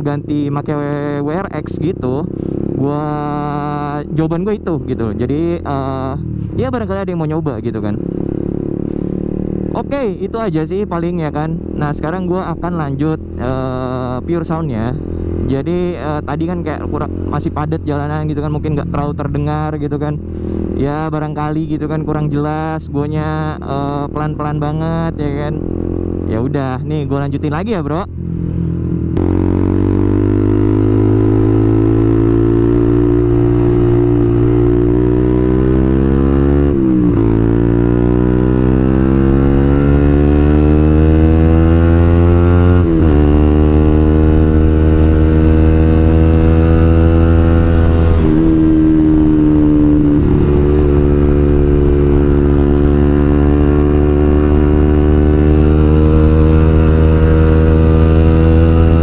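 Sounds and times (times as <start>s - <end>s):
motorcycle engine accelerating: 0.0s - 59.0s.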